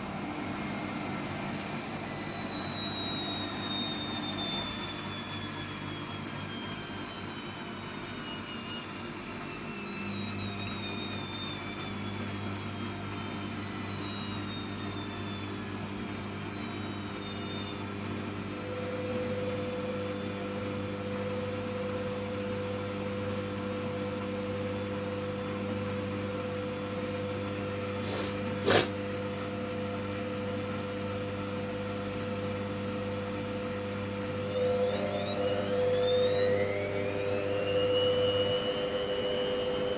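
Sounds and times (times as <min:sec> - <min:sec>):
washing machine motor hum: 0:00.0 - 0:39.9
high whine: 0:34.1 - 0:39.9.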